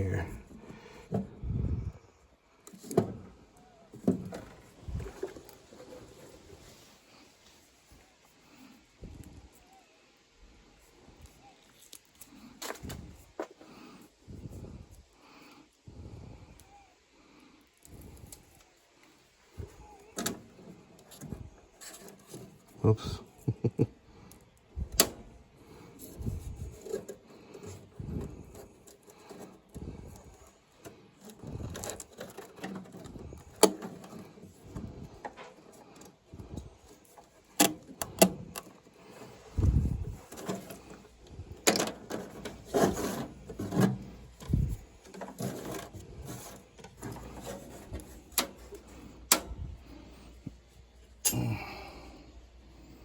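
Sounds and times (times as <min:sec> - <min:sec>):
scraping and rubbing: 0:04.0 - 0:09.6, 0:25.6 - 0:51.2.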